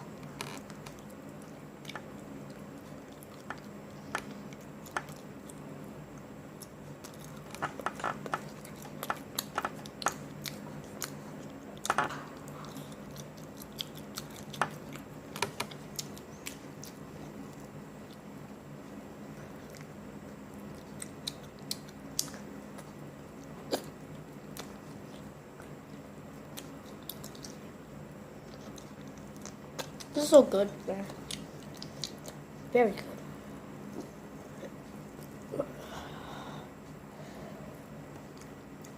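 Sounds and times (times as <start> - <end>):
person chewing crispy food: 0.4 - 18.4, 19.4 - 27.7, 31.2 - 32.4.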